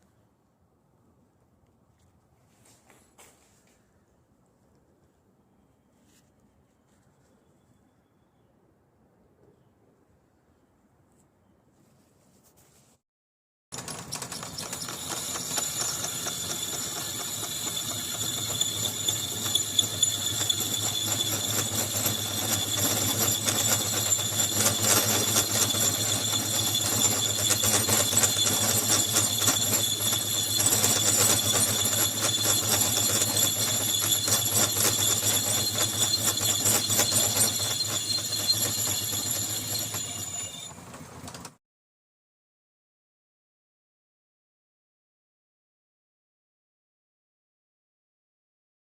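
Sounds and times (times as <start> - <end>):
skid steer running: 13.8 - 41.5.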